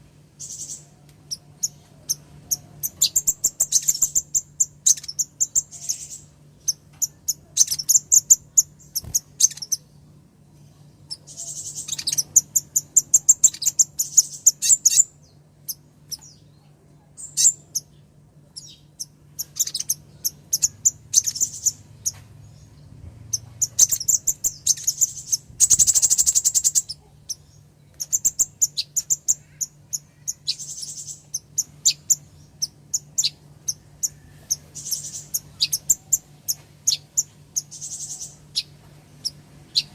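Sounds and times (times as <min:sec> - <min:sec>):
sunbird chirping: 0:00.4 - 0:39.9.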